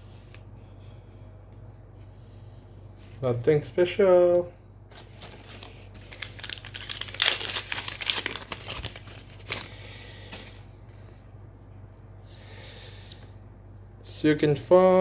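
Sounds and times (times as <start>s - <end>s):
foil wrapper crinkling and tearing: 5.0s - 10.6s.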